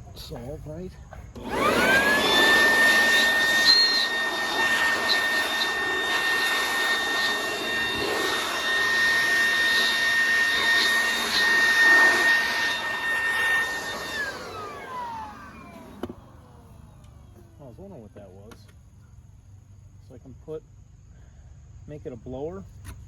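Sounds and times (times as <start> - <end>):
vacuum motor whining: 1.1 - 18.5
rushing air: 1.5 - 15.6.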